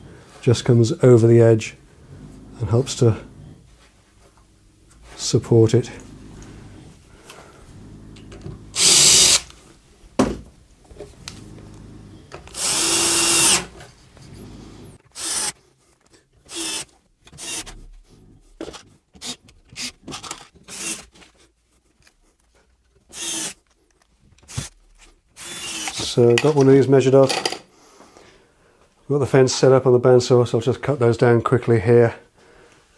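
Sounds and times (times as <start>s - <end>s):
cordless drill driving screws: 8.1s - 9.6s, 11.4s - 15.6s, 16.5s - 17.8s, 19.2s - 21.1s, 23.1s - 23.6s, 25.4s - 26.1s
knocks and clatters of parts: 10.1s - 11.2s, 18.6s - 21.4s, 25.9s - 27.7s.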